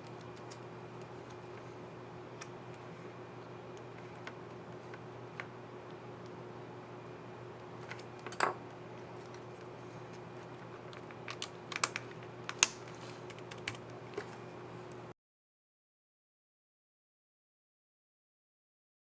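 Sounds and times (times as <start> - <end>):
steady low hum: 0.0 - 15.1.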